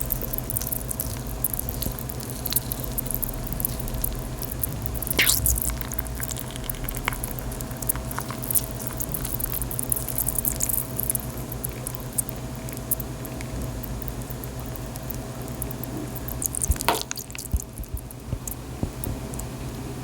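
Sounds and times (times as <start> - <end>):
chalk crackling in water: 0.0 - 11.2, 16.2 - 18.6.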